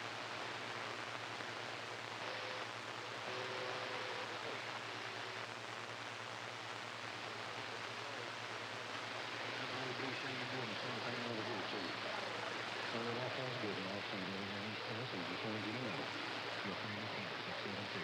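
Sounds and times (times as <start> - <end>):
radio static hiss: 0.0 - 18.0.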